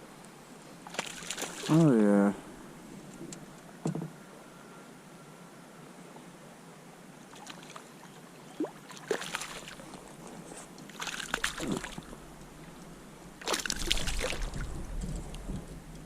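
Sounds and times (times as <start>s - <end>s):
fish splashing at water surface: 0.9s - 1.8s, 8.7s - 9.9s, 10.9s - 12.1s, 13.4s - 14.7s.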